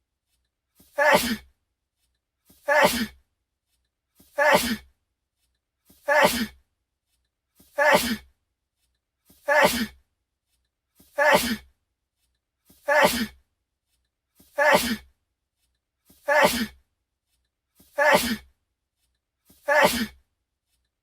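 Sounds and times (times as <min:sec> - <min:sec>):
man sneezing: 0:01.0 - 0:01.4, 0:02.6 - 0:03.2, 0:04.4 - 0:04.8, 0:06.1 - 0:06.6, 0:07.8 - 0:08.2, 0:09.5 - 0:10.0, 0:11.2 - 0:11.6, 0:12.9 - 0:13.4, 0:14.6 - 0:15.0, 0:16.3 - 0:16.8, 0:18.0 - 0:18.4, 0:19.7 - 0:20.2.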